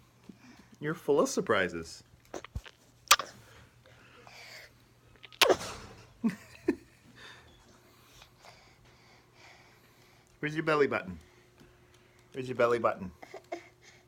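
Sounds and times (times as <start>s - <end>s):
baby mouth sounds: 2.3s - 3.3s
baby tongue click: 2.4s - 3.3s.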